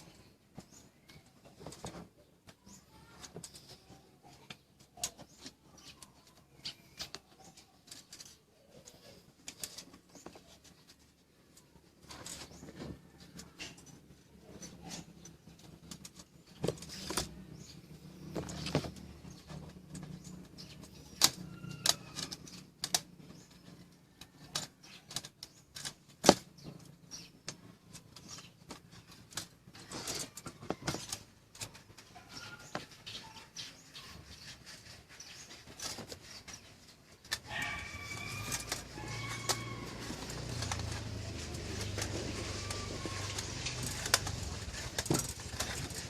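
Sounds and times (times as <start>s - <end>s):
birds chirping: 0.0s - 46.0s
small hard objects clicking: 34.4s - 46.0s.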